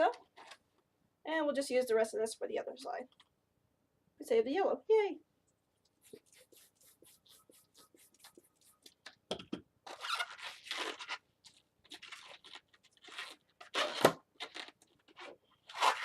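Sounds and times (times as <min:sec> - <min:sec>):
balloon rubbing and crinkling: 0:05.9 - 0:09.1, 0:09.8 - 0:16.0.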